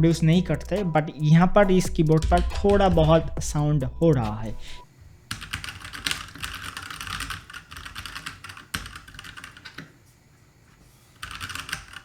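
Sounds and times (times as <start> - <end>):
mechanical keyboard typing: 5.3 - 9.8, 11.2 - 12.0.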